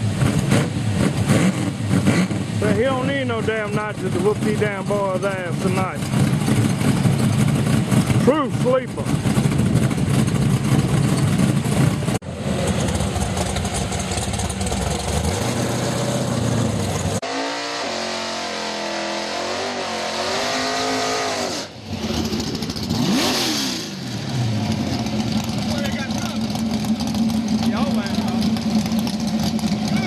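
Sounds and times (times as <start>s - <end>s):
race car engines revving: 0.0s - 30.0s.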